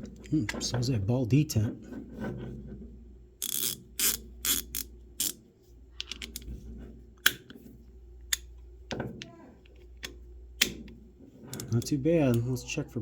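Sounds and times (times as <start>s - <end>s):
ratchet clicking: 3.4s - 5.4s.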